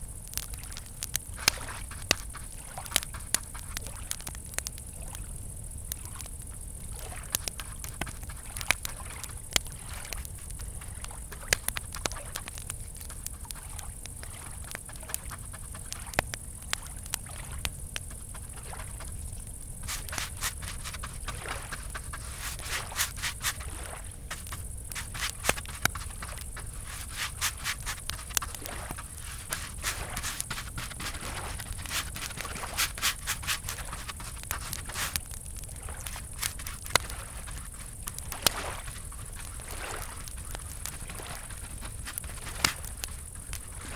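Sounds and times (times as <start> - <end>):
campfire crackling and popping: 0.0 - 43.9
crickets chirping: 0.0 - 43.9.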